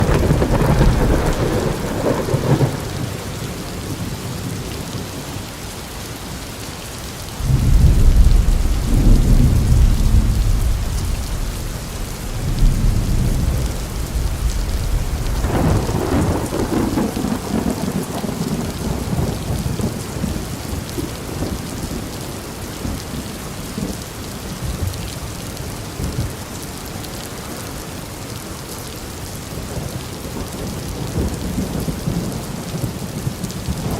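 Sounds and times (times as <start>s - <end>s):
rolling thunder: 0.0s - 4.6s, 7.4s - 20.6s
steady rain hiss: 0.0s - 33.9s.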